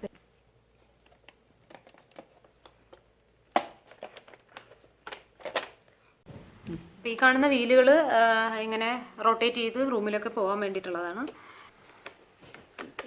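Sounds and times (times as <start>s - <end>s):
plastic clicks and rustles: 0.8s - 6.0s, 11.2s - 13.0s.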